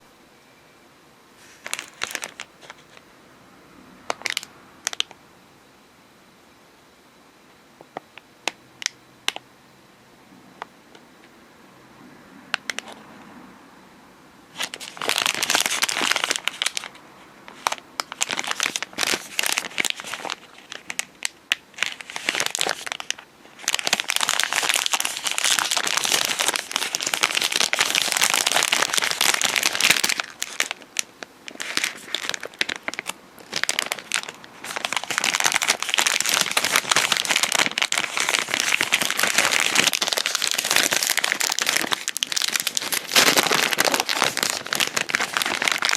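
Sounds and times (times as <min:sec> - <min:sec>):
plastic wrapper crinkling: 0:01.4 - 0:03.0, 0:04.1 - 0:05.1, 0:14.5 - 0:45.9.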